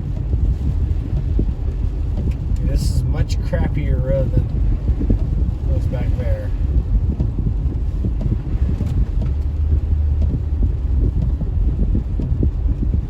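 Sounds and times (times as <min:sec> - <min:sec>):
car driving on rough dirt road: 0:00.0 - 0:13.0.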